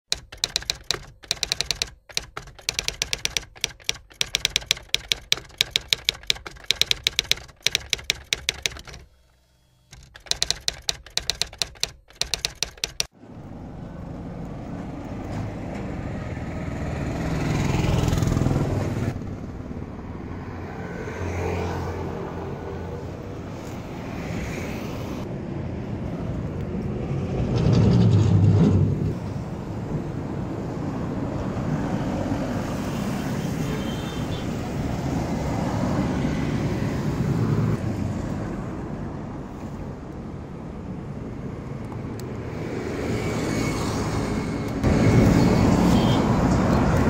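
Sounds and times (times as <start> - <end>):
typewriter key clicks: 0.1 - 9.1, 9.9 - 13.1
engine rumble: 13.1 - 24.1.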